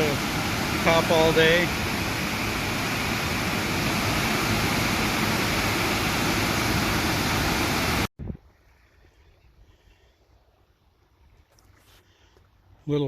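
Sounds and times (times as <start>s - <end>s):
waterfall roaring: 0.0s - 8.1s.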